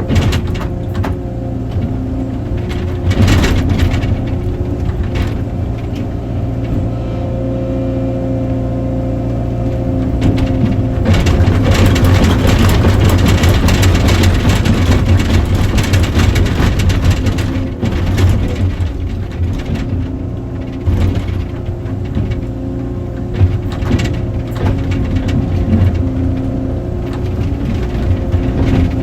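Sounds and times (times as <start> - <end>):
excavator engine running: 0.0 - 29.0
dense crackling: 10.2 - 29.0.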